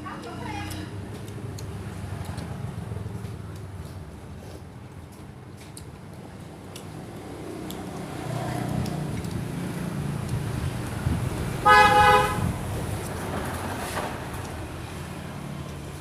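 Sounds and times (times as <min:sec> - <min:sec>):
road traffic rumble: 0:00.0 - 0:16.0
vehicle horn honking: 0:11.6 - 0:12.5.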